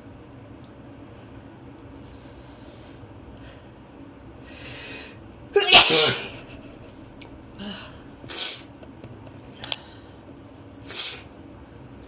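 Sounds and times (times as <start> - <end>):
sneeze: 5.6 - 6.7.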